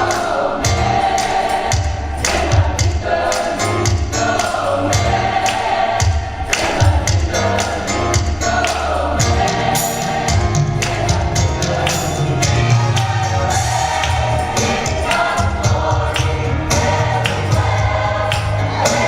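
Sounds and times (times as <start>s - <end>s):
gospel choir singing: 0.0s - 19.0s
drum hits: 1.7s - 3.1s, 6.0s - 7.4s
bass line: 6.1s - 19.0s.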